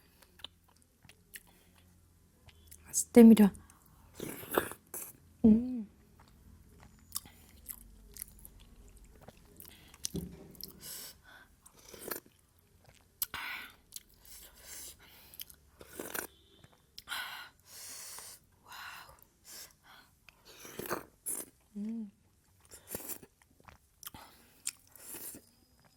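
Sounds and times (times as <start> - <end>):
close-up chewing: 0.2 - 2.9, 6.1 - 17.1, 19.0 - 25.9.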